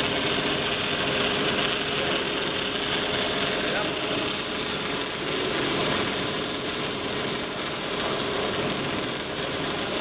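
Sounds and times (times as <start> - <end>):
welding arc crackling hiss: 0.0 - 10.0.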